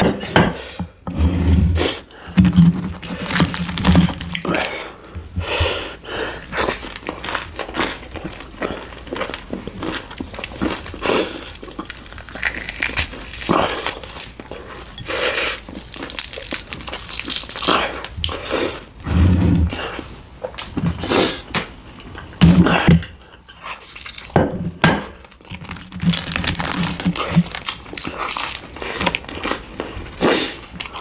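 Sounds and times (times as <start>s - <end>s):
chewing and mouth noises: 6.4s - 18.9s, 25.2s - 31.0s.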